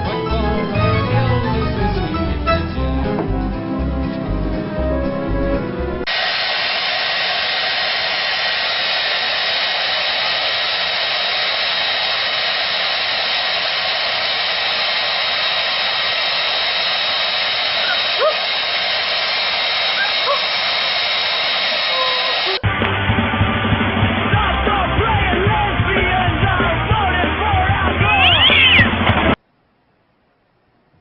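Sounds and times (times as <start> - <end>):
electric blower motor whining: 6.0 - 22.6
high squeaky cries: 28.1 - 28.9.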